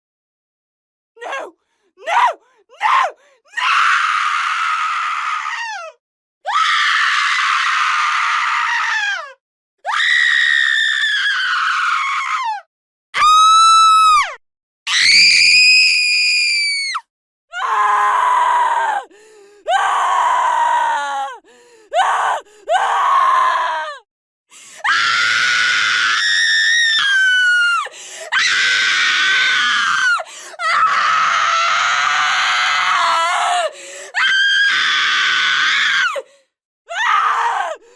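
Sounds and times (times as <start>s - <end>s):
woman screaming: 28.4s - 36.2s.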